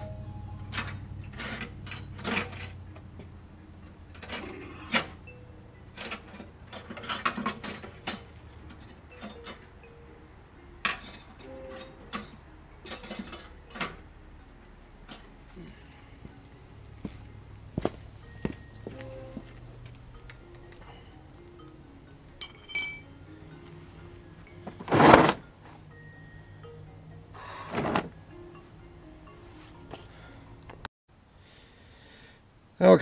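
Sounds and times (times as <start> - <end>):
hand tools clinking on metal: 5.9 - 9.8, 10.8 - 14.0, 22.4 - 25.2.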